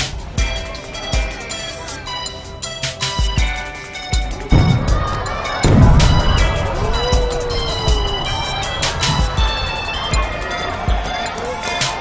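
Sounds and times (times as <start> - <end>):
music with low beat: 0.0 - 12.0
loud noisy surge: 4.3 - 12.0.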